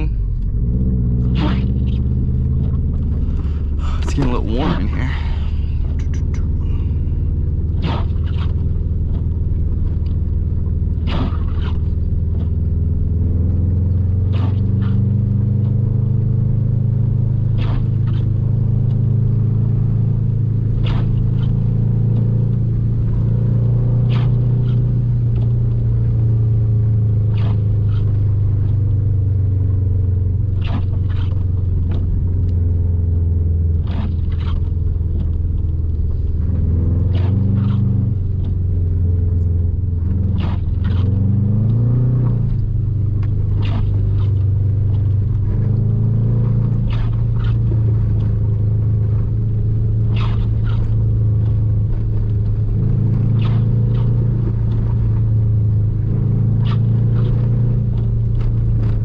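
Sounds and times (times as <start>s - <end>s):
car engine running: 0.0s - 59.0s
knocks and clatters from rough road: 0.0s - 59.0s.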